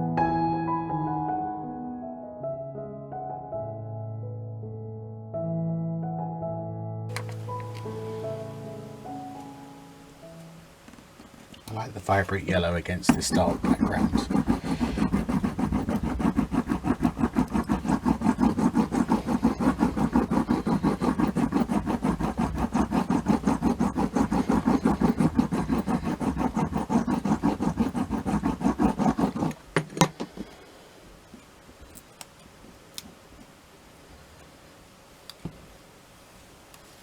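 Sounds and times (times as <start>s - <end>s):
hand tool rubbing on wood: 10.9s - 30.6s.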